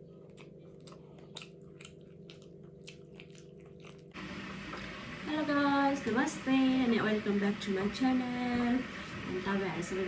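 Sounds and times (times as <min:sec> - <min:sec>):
person chewing crunchy food: 0:00.0 - 0:04.2.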